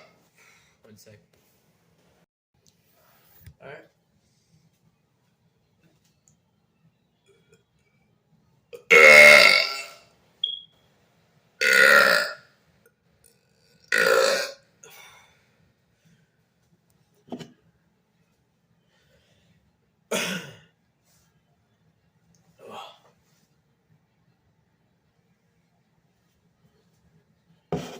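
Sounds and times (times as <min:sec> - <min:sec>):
man belching: 0:08.8 - 0:10.0, 0:11.6 - 0:12.4, 0:13.9 - 0:14.6.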